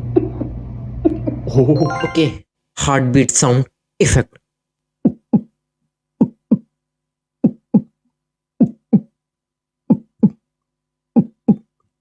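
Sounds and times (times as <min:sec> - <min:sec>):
beatboxed heartbeat thumps: 0:06.2 - 0:06.7, 0:07.4 - 0:08.0, 0:08.6 - 0:09.1, 0:09.9 - 0:10.4.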